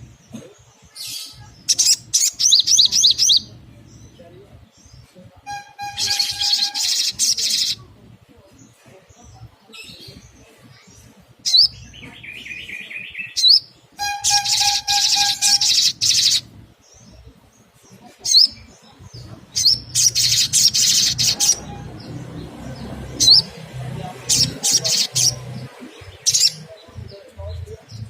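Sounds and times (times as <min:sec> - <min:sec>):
buzzy bird trill: 0:00.0 - 0:08.0, 0:08.6 - 0:28.0
bird chirping: 0:00.0 - 0:28.0
fast high bird twittering: 0:01.1 - 0:04.2, 0:04.8 - 0:07.9, 0:11.4 - 0:17.3, 0:18.0 - 0:28.0.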